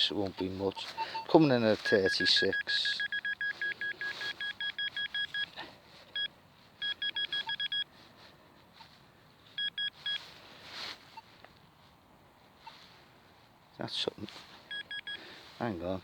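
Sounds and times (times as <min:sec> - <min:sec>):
metal detector beeping: 0:00.0 - 0:07.9, 0:09.6 - 0:10.3, 0:14.7 - 0:15.2
soft scrape: 0:10.1 - 0:11.2.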